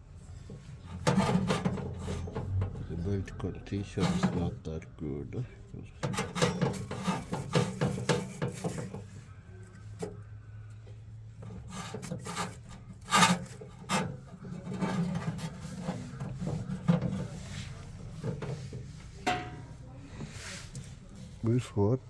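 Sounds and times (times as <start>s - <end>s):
hands rubbing and scraping machine: 0.4s - 2.7s, 3.9s - 4.5s, 6.0s - 9.3s, 11.4s - 21.6s.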